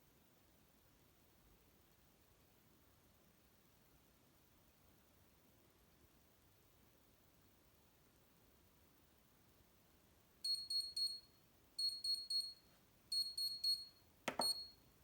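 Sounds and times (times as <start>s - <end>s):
high-pitched timer beeps: 10.4s - 14.8s.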